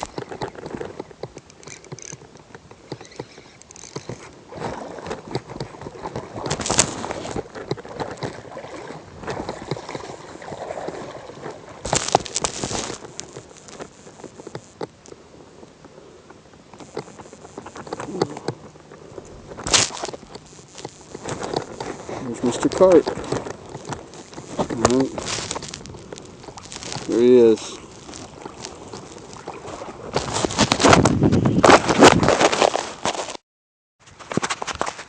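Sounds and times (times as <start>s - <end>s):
footsteps sloshing through water: 4.0s - 14.4s, 21.0s - 31.1s.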